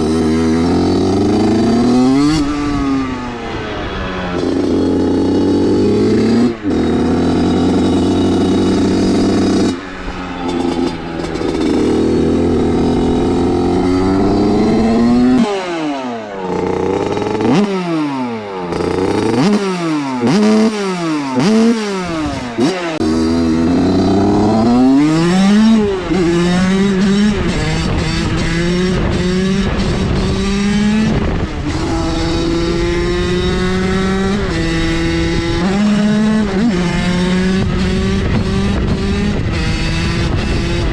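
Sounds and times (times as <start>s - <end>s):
motorbike engine revving: 0.0s - 40.9s.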